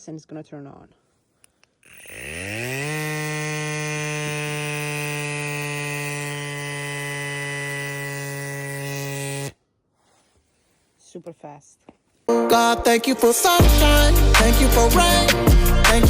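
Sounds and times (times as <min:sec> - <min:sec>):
air compressor motor humming: 0:01.8 - 0:09.6.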